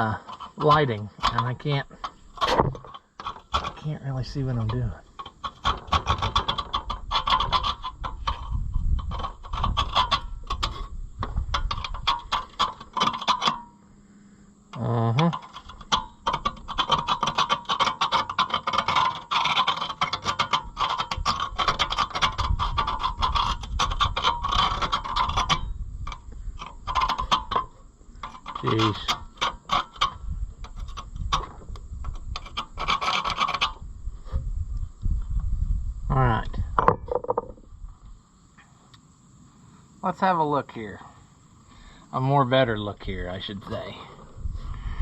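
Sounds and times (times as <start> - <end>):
metal tool scraping cast iron: 0.0 - 13.8, 15.2 - 34.4.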